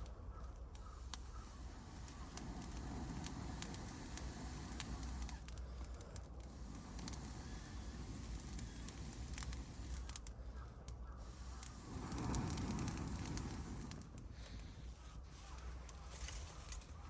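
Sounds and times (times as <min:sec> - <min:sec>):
campfire crackling: 0:00.0 - 0:17.0.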